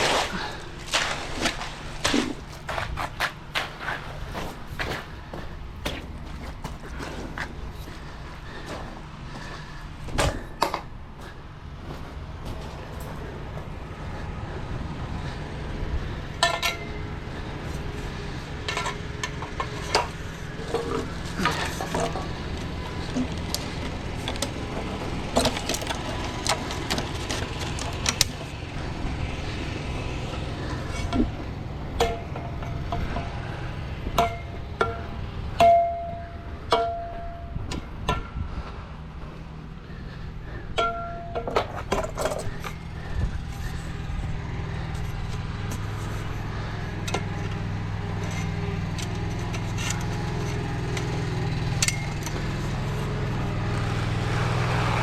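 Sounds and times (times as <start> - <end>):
engine running: 0.0 - 55.0
metallic clinks and clanks: 16.4 - 28.9, 40.8 - 53.4.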